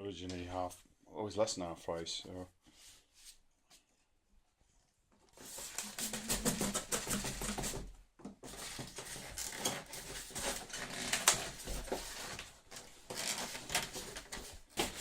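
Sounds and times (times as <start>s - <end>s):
packaging rustling: 5.4s - 7.9s, 8.5s - 15.0s.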